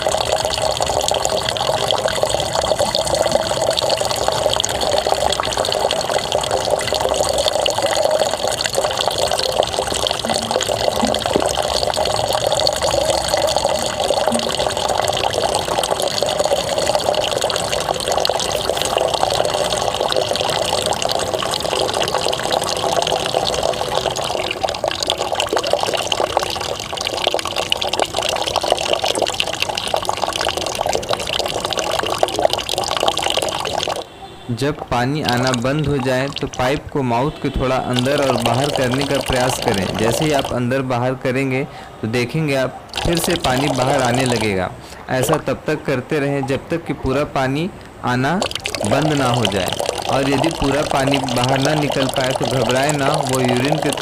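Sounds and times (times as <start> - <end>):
water splashing out of a tube: 34.6 - 40.6, 42.9 - 44.5, 48.4 - 54.0.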